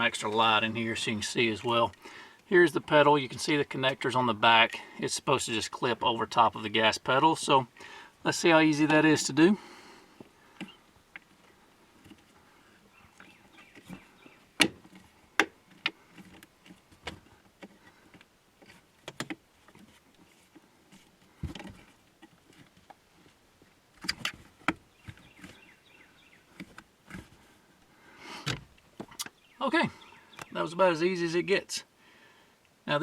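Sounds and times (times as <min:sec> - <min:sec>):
sharp clicks and knocks: 0:13.2 - 0:19.9.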